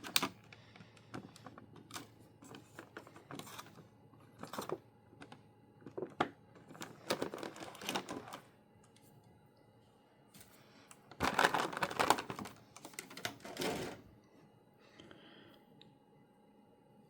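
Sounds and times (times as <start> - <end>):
plastic packaging clicking and clattering: 0.0 - 8.5, 11.1 - 14.0.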